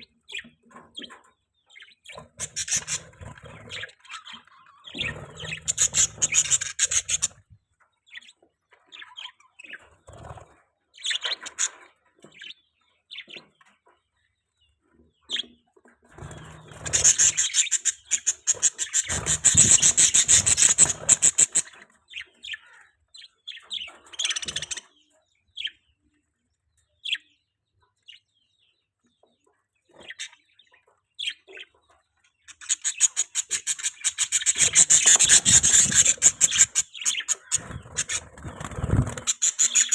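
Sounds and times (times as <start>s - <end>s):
budgerigar chirping: 1.7s - 7.4s, 16.6s - 25.0s, 32.4s - 39.9s.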